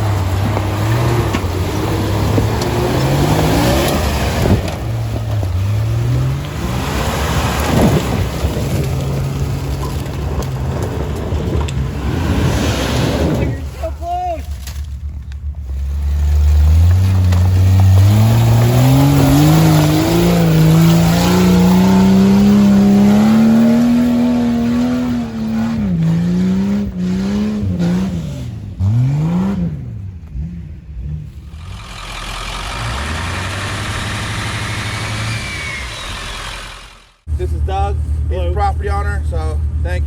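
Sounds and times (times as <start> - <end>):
engine running at low revs: 0.0 - 13.8
vehicle engine revving: 0.0 - 13.8, 14.5 - 40.0.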